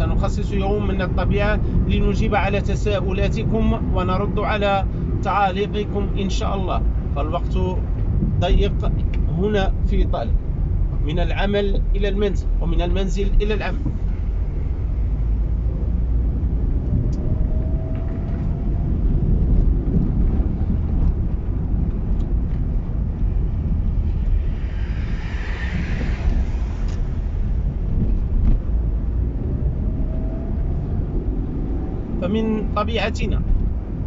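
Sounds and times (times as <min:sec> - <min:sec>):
car road and engine rumble: 0:00.0 - 0:34.0
faint rising whine: 0:21.5 - 0:33.6
hiss: 0:24.4 - 0:27.6.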